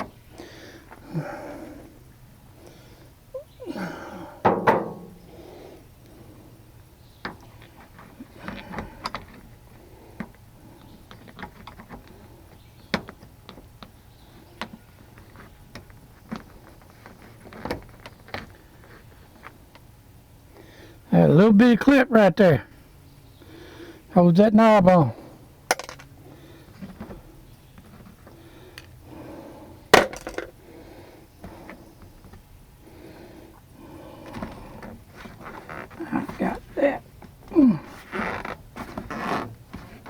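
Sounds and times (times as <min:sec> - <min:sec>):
clicks and knocks of hand tools: 0:25.7 - 0:26.1.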